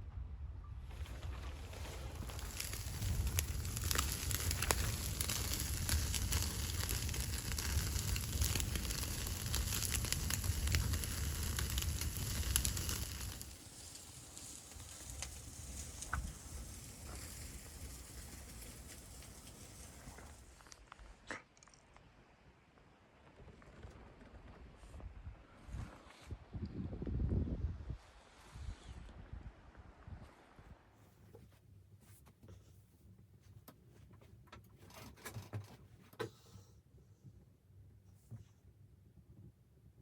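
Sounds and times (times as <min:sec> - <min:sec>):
wood fire crackling: 0:00.9 - 0:21.0
sharp pops of fire: 0:01.1 - 0:20.8
fire hissing: 0:01.2 - 0:20.7.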